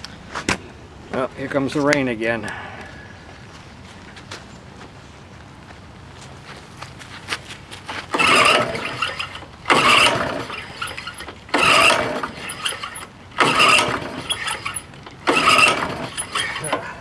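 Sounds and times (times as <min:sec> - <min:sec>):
lawnmower pull-start cranking: 0:07.9 - 0:17.0.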